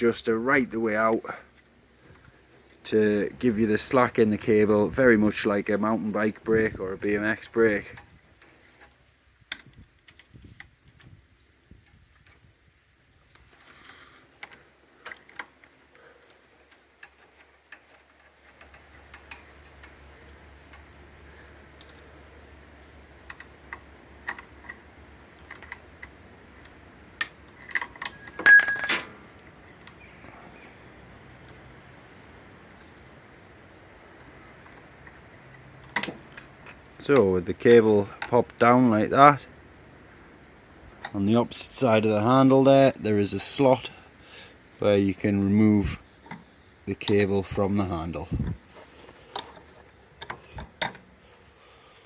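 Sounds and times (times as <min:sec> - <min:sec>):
small metallic clicks and taps: 0:23.2 - 0:29.1
ringing metallic clatter: 0:27.6 - 0:29.2.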